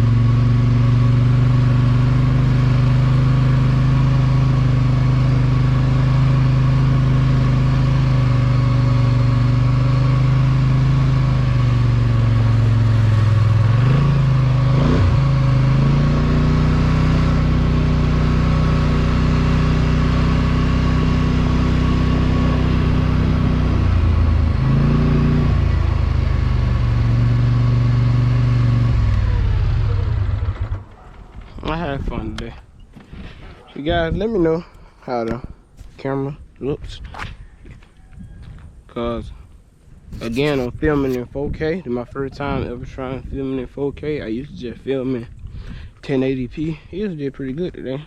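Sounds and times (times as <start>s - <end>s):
atv engine running: 0.0s - 31.6s, 40.2s - 41.2s.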